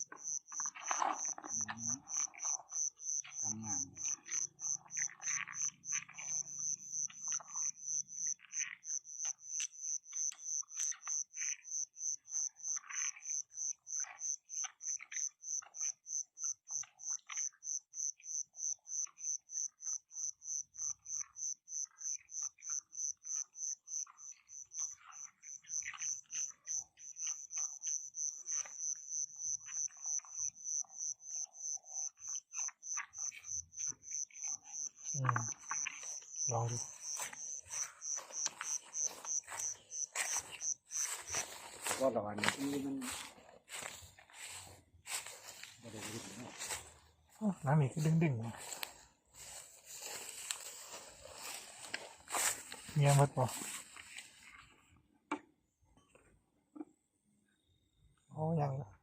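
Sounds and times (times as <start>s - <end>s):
frogs croaking: 0.0s - 54.4s
high pulsing chirp: 33.2s - 43.1s.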